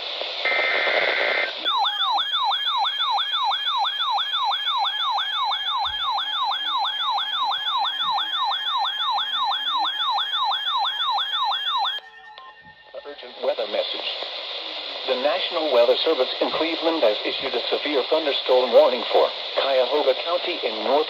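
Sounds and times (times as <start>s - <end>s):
electronic siren yelp: 0.5s - 13.2s.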